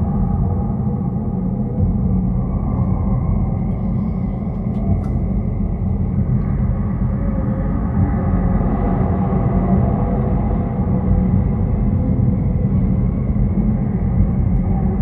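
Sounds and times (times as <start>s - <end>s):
low ambient drone rumble: 0.0s - 15.0s.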